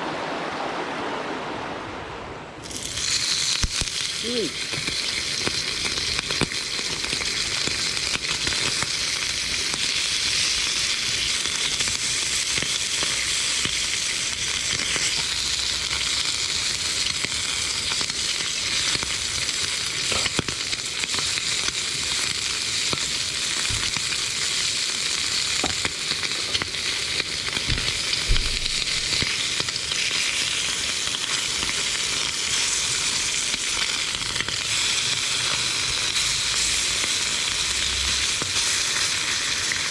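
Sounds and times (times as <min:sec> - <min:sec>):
food sizzling in a pan: 0:02.6 - 0:39.9.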